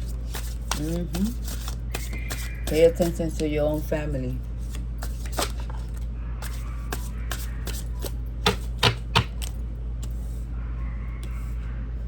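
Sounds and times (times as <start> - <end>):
cards clicking and tapping: 0.3 - 3.5, 4.7 - 10.2
cards tapping on table: 6.9 - 9.5.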